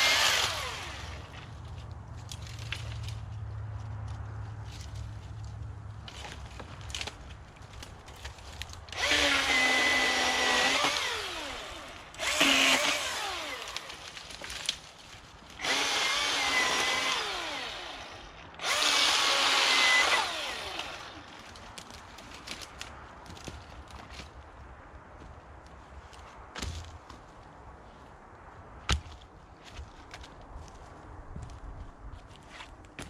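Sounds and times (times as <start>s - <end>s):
electric chainsaw motor whining: 0.0s - 1.4s, 8.9s - 14.0s, 15.6s - 21.4s.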